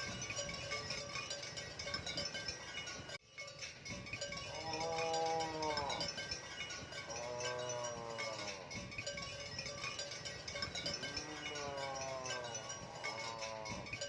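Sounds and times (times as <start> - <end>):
background music with chimes: 0.0 - 14.0
cattle mooing: 4.5 - 6.2, 7.0 - 8.8, 10.9 - 14.0.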